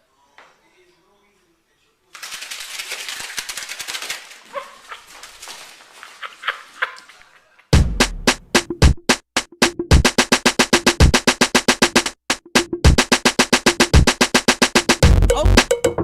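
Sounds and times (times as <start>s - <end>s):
electronic music: 7.8s - 16.0s
fast drum machine beat: 7.8s - 16.0s.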